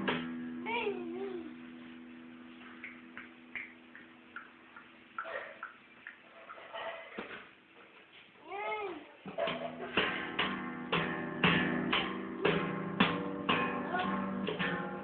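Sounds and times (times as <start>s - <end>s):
guitar strummed in chords: 0.0s - 0.8s, 9.4s - 15.0s.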